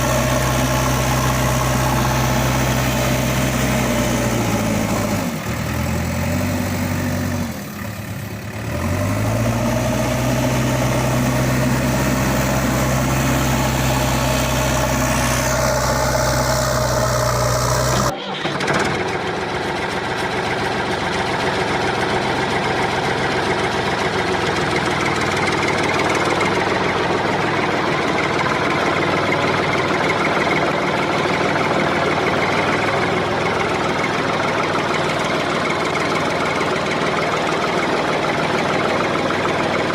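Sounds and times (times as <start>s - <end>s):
diesel engines deep hum: 0.0s - 39.9s
noisy engine running: 0.0s - 39.9s.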